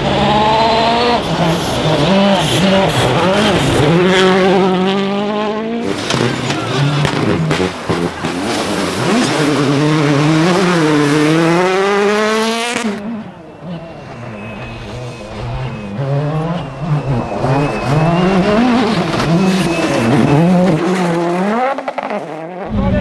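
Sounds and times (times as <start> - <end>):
rally car engine accelerating: 0.0 - 23.0
exhaust cracks and pops: 5.9 - 8.6.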